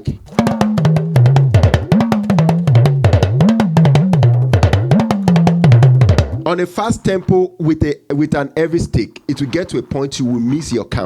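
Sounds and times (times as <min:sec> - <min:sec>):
talking drum played with stick: 0:00.0 - 0:07.4.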